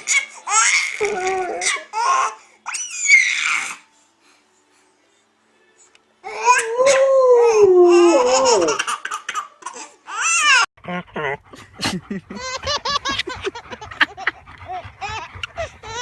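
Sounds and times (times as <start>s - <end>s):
baby wailing cry: 0.0s - 3.9s, 6.2s - 9.0s, 9.6s - 10.7s, 14.7s - 16.0s.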